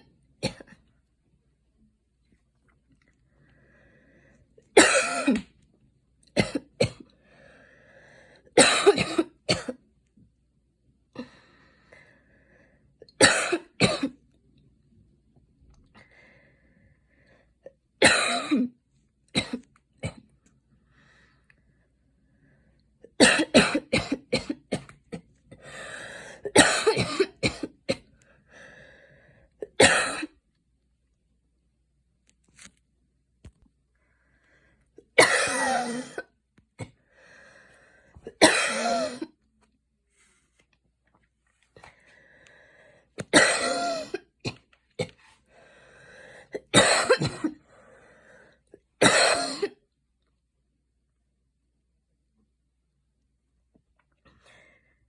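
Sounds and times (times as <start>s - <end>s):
woman coughing hard: 4.8s - 5.5s, 6.4s - 7.0s, 8.6s - 9.8s, 13.2s - 14.2s, 18.0s - 18.7s, 23.2s - 24.8s, 26.5s - 28.0s, 29.7s - 30.3s, 35.2s - 36.3s, 38.3s - 39.3s, 43.3s - 44.6s, 46.6s - 47.6s, 49.0s - 49.8s.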